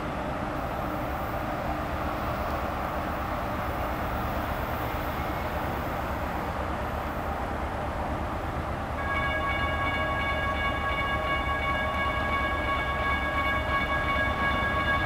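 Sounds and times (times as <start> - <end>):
diesel train rumbling: 0.0 - 15.0
locomotive air horn chord: 9.0 - 15.0.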